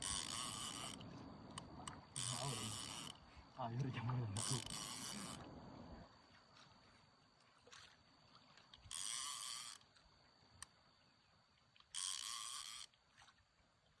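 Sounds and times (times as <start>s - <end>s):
fishing reel drag buzzing: 0.0s - 5.5s, 8.8s - 10.0s, 11.8s - 13.0s.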